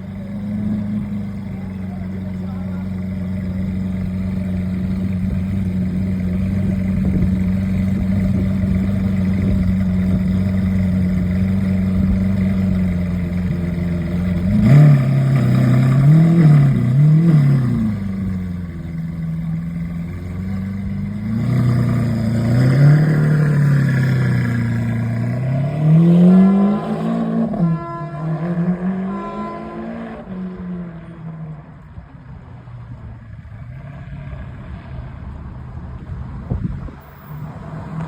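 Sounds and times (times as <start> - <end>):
car engine idling: 0.0 - 28.2
car engine revving: 0.0 - 31.9.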